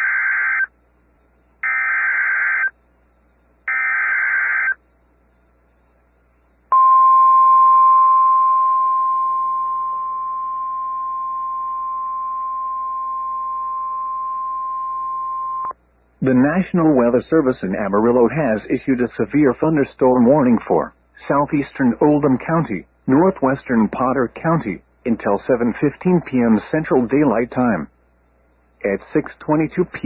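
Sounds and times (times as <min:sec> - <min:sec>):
warbling data tone bursts: 0:00.0 - 0:00.8, 0:01.6 - 0:02.8, 0:03.6 - 0:04.8, 0:06.7 - 0:15.8
steady alarm tone: 0:01.6 - 0:02.8, 0:03.7 - 0:04.8, 0:06.7 - 0:15.7.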